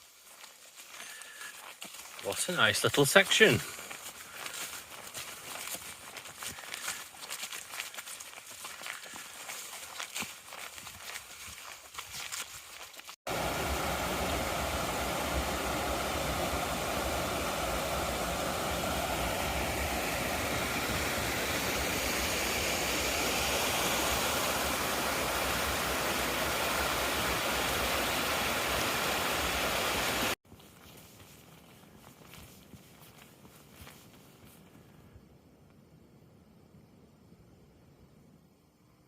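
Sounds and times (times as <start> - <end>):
running water rushing: 1.9 - 30.4.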